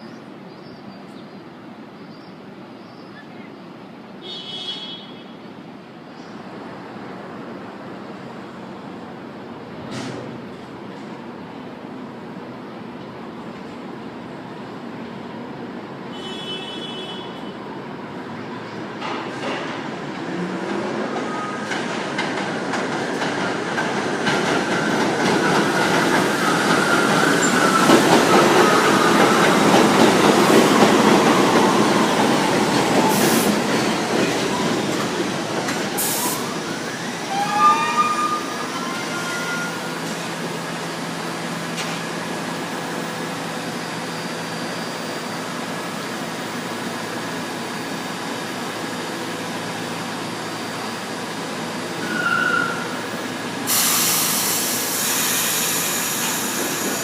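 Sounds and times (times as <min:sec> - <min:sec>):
steady train hum: 0:00.0 - 0:57.0
train wheels rumbling on rail: 0:06.5 - 0:16.1, 0:18.1 - 0:57.0
train brake squeal: 0:21.2 - 0:21.7, 0:26.4 - 0:29.5, 0:37.2 - 0:40.1, 0:52.0 - 0:53.1, 0:53.7 - 0:57.0.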